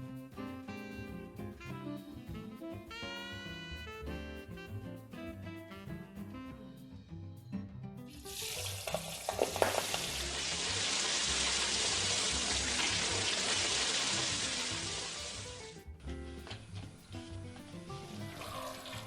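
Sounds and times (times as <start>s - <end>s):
faint background music: 0.0s - 19.0s
oil crackles: 8.1s - 15.8s
shrimps sizzling in hot oil: 8.1s - 15.8s.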